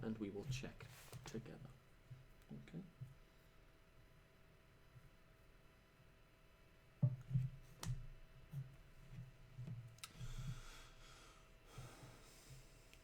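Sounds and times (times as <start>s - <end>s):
soft low knocks at a desk: 7.0s - 8.1s.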